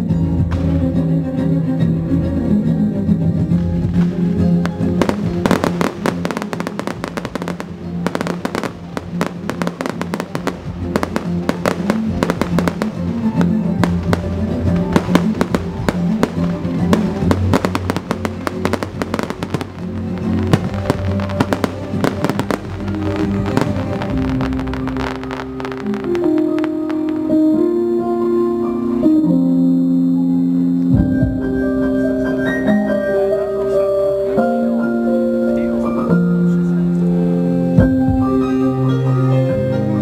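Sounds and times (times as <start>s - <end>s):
orchestral music: 0.0s - 40.0s
fireworks bangs and crackles: 3.6s - 27.4s.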